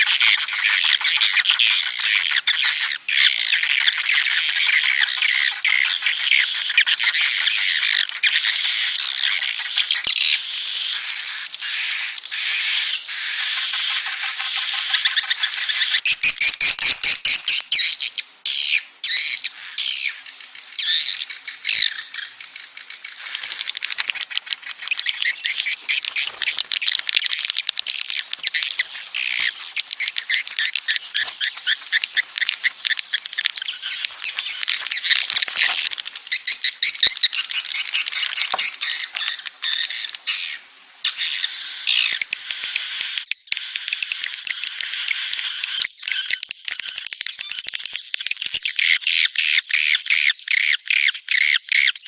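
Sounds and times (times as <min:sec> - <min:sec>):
swiftlets twittering: 0:23.2 - 0:39.3.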